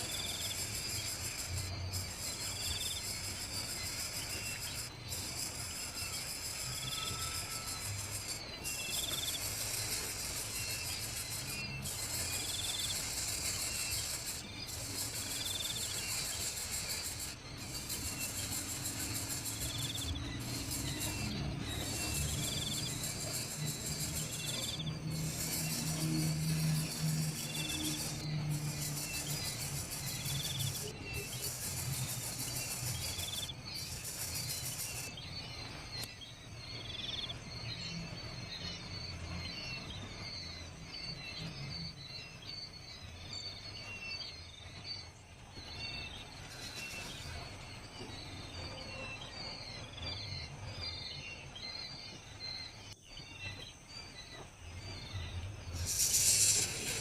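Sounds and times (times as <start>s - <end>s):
high insect buzz: 0.0s - 36.1s, 55.0s - 57.0s
birds chirping: 0.0s - 57.0s
burst of hiss: 55.8s - 57.0s.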